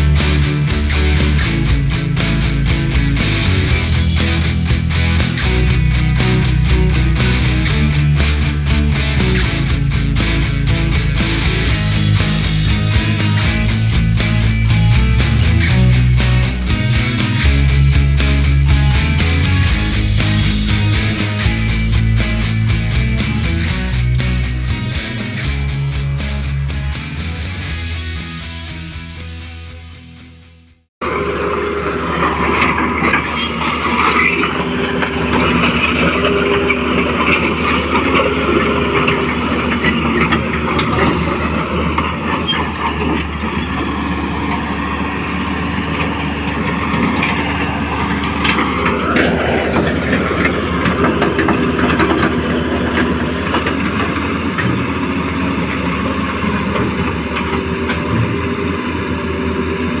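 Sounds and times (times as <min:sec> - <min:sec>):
whining tones: 0:00.0 - 0:28.7.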